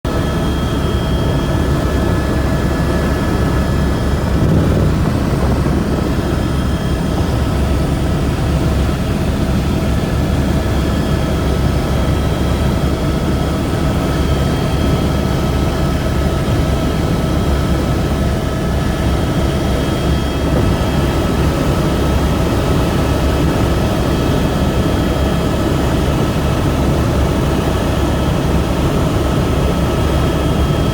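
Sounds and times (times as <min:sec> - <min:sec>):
helicopter rotor and engine rumble: 0:00.0 - 0:30.9
high whine: 0:00.2 - 0:08.2.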